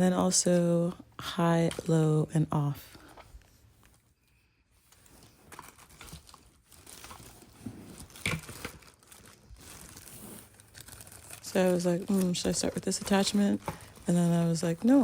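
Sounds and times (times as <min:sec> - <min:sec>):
packaging crinkling and rustling: 0:04.8 - 0:15.0.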